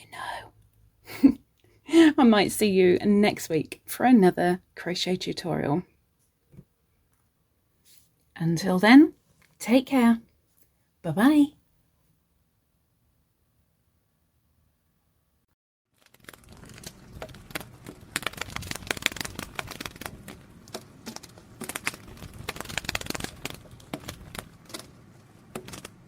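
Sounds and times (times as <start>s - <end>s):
rustling and crinkling: 15.9s - 26.0s.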